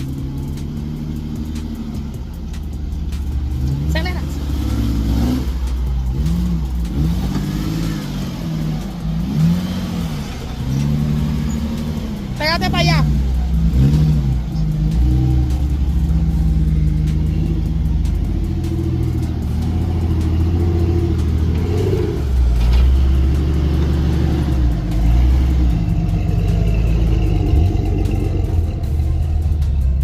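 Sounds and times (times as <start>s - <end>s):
engine revving under load: 0.0s - 30.0s.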